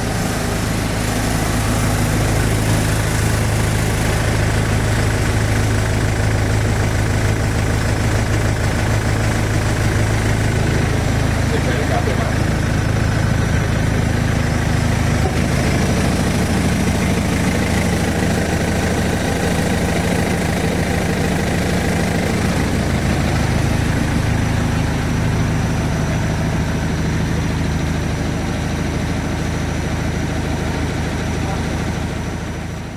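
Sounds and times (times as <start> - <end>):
diesel engine running: 0.0 - 32.9.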